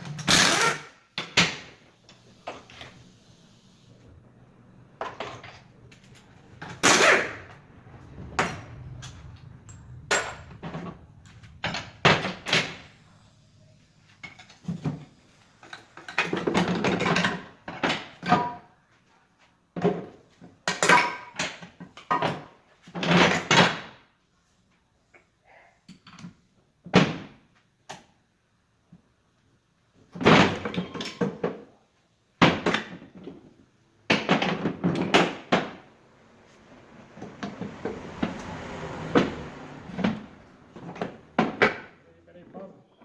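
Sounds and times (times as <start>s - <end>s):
rattling clatters: 5.0s - 13.3s.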